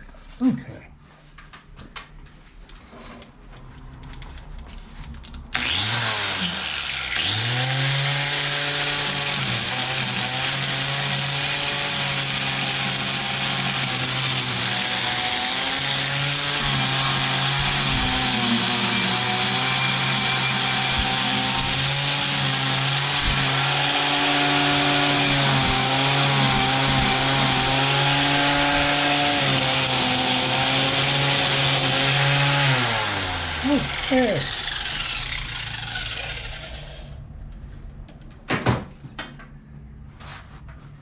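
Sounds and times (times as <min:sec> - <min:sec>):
electric power tool running: 0:05.5 - 0:37.2.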